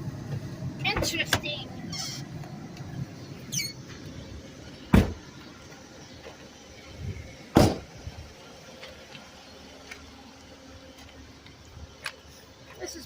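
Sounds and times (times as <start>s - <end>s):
low background rumble: 0.0s - 13.0s
high falling squeak: 1.9s - 2.2s, 3.5s - 3.8s
car doors slamming: 4.9s - 5.4s, 7.5s - 8.0s.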